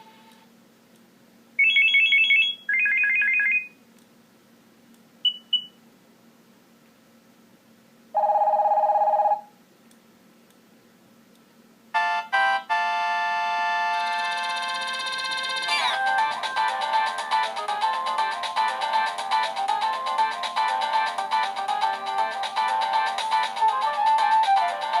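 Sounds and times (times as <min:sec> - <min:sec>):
ringtone melody: 0:12.0 - 0:25.0
electronic trill alert tones: 0:14.0 - 0:16.0.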